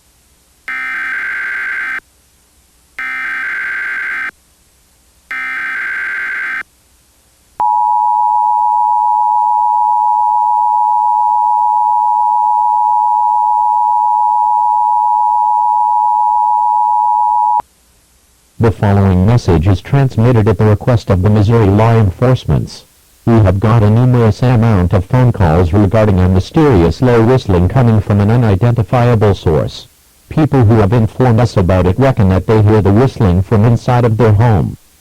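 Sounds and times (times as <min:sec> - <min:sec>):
harsh buzzing data bursts: 0:00.7 - 0:02.0, 0:03.0 - 0:04.4, 0:05.3 - 0:06.7
two-tone attention signal: 0:07.6 - 0:17.6.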